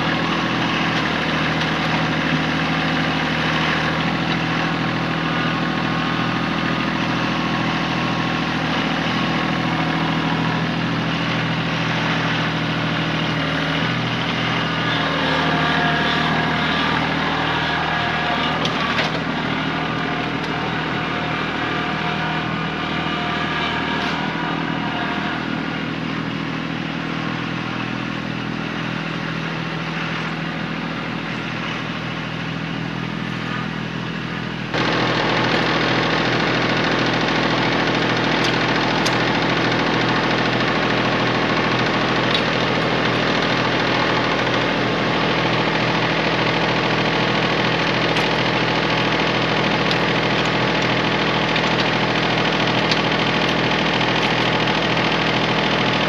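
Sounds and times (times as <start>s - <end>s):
tractor diesel engine running: 0.0s - 56.0s.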